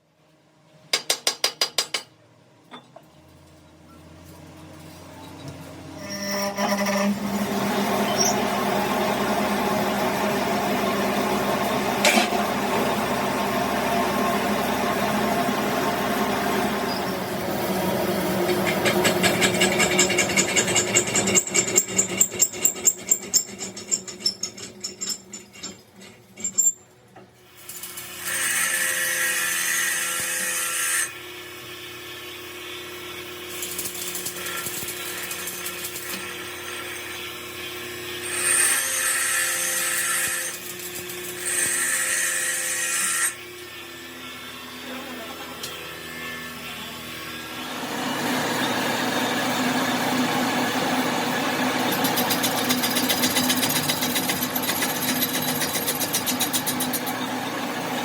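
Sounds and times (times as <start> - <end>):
power tool on metal: 6.0 - 26.8, 27.4 - 58.0.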